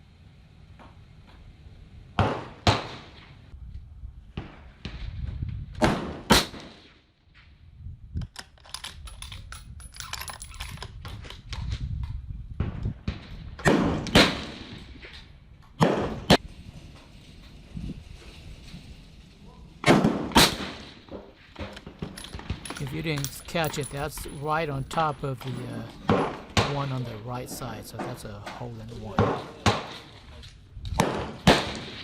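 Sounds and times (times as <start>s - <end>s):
rifle shots: 13.6s - 14.8s, 19.8s - 21.0s, 31.0s - 32.0s.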